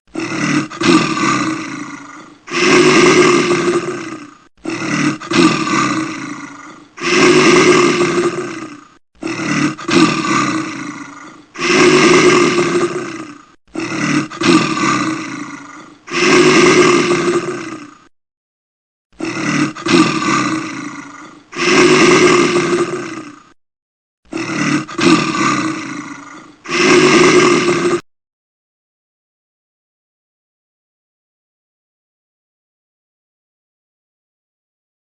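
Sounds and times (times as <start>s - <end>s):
bear roaring: 0.1s - 18.1s, 19.2s - 23.6s, 24.3s - 28.0s.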